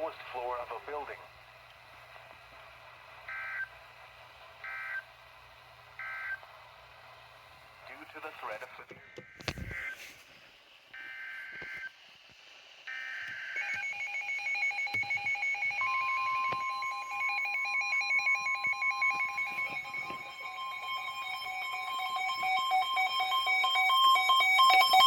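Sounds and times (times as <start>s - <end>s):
steady warning alarm tone: 3.2s - 3.8s, 4.6s - 5.2s, 6.0s - 6.4s, 12.9s - 25.0s.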